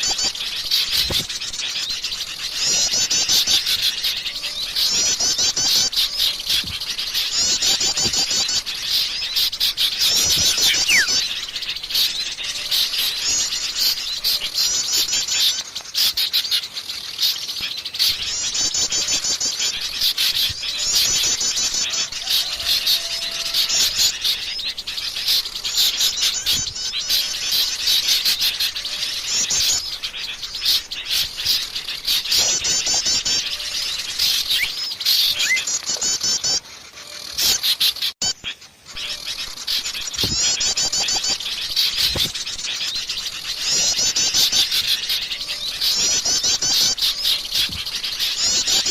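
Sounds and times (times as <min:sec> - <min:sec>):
birds chirping: 0:00.0 - 0:48.9
bird high fast trilling: 0:02.6 - 0:14.1, 0:28.1 - 0:36.6.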